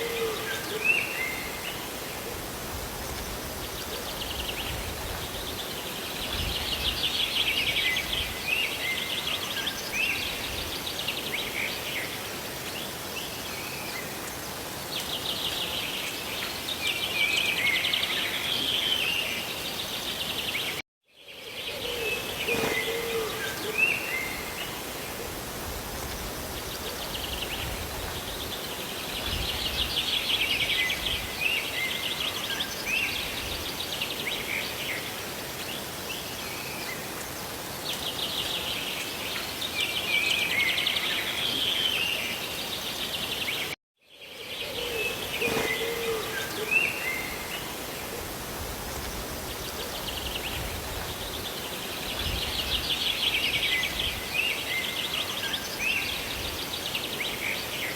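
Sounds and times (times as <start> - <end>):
rain hissing: 1.1 - 8.8, 22.2 - 31.4, 45.1 - 54.4.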